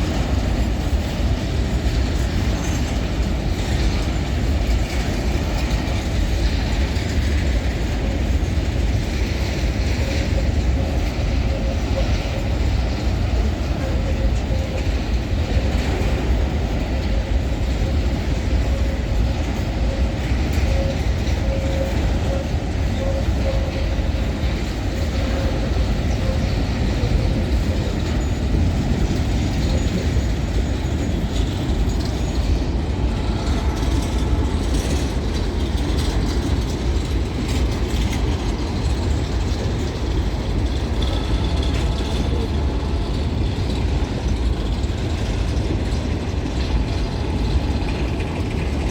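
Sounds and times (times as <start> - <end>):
freight train wheels rattling on rail: 0.0 - 48.9.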